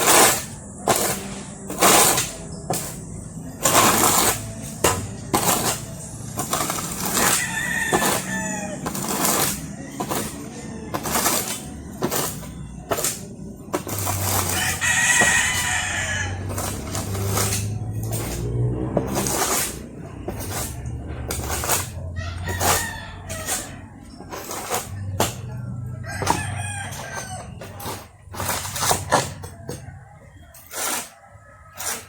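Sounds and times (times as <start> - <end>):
shovel scraping and knocking: 0.0 - 32.0
rooster crowing: 7.1 - 11.1, 14.5 - 17.2, 22.0 - 23.9, 24.9 - 27.8.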